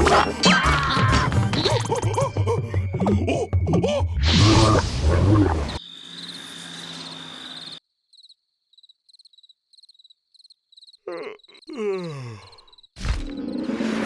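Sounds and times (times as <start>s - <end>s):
gravelly cartoon vocal cry: 0.0s - 5.5s, 11.0s - 12.7s
crickets chirping: 5.7s - 13.7s.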